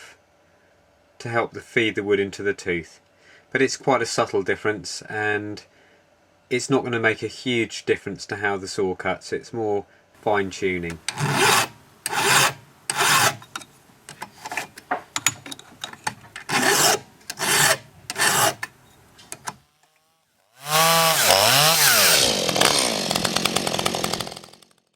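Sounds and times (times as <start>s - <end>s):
chainsaw engine running: 10.2s - 24.9s
file rasping on chain: 10.9s - 19.6s
small clicks: 18.1s - 20.0s.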